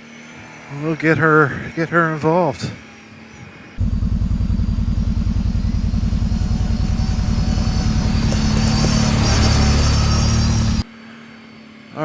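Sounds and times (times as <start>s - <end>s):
atv engine running: 3.8s - 10.8s.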